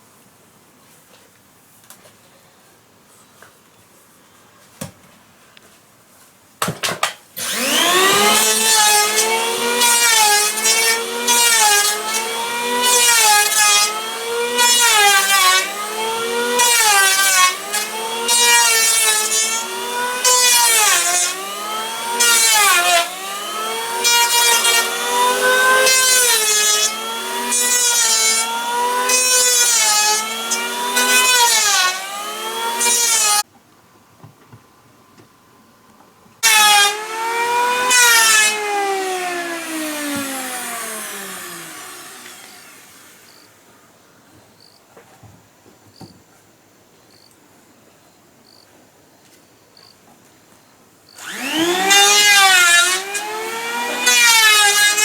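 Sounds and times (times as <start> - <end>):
chainsaw cutting wood: 6.7 - 33.4, 36.4 - 43.5, 51.2 - 55.0.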